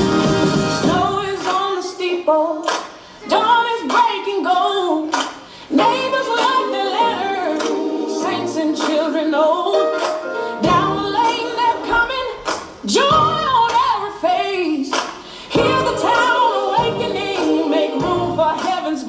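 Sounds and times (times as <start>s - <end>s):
children singing together: 5.7s - 9.8s, 10.7s - 12.4s, 15.6s - 19.0s.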